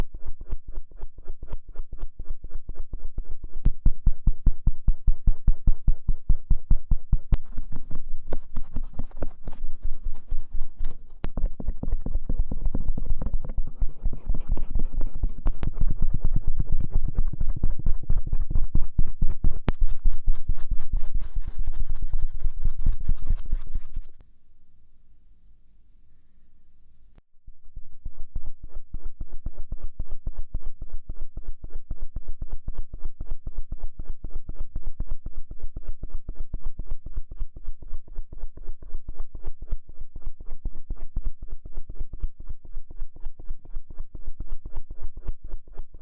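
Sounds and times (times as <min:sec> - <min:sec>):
tools scraping ear at microphone: 0:07.4 - 0:11.3, 0:12.9 - 0:16.0.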